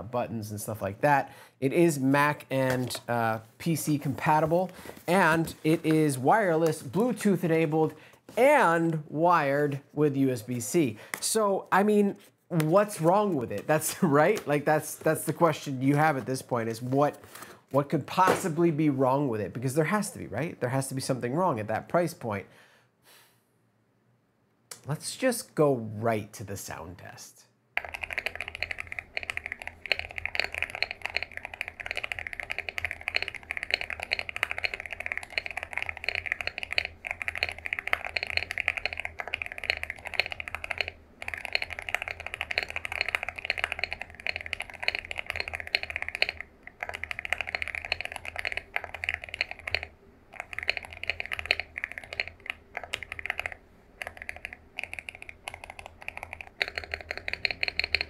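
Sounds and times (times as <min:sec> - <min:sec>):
fast mechanical keyboard typing: 0:27.8 - 0:58.0.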